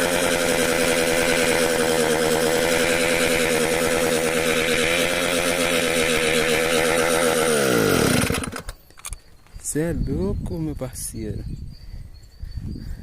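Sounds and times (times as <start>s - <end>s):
small motorcycle engine revving: 0.0s - 8.8s.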